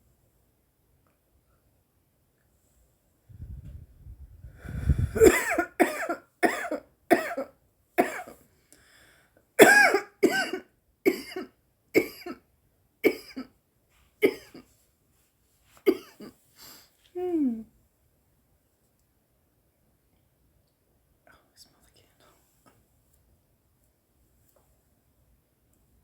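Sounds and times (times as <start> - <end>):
woman coughing hard: 5.2 - 8.4, 9.6 - 12.4, 13.0 - 13.5, 14.2 - 14.6, 15.9 - 16.3.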